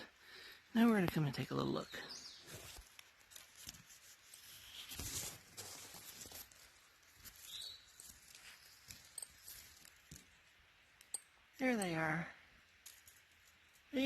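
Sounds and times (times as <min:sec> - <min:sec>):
footsteps rustling through dry leaves: 0:02.4 - 0:10.1
faint high chirp: 0:07.4 - 0:09.7.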